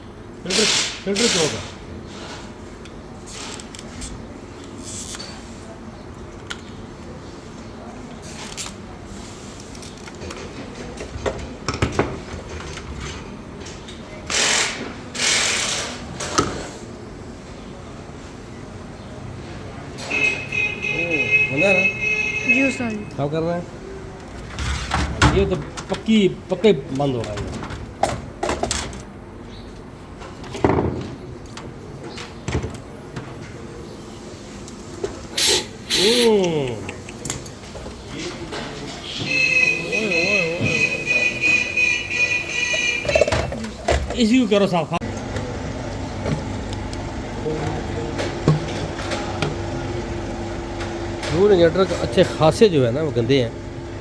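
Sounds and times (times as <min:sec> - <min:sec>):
loud bursts of hiss: 0:00.5 - 0:02.3, 0:14.3 - 0:16.0, 0:35.3 - 0:37.0
short loud hiss: 0:35.4 - 0:36.4.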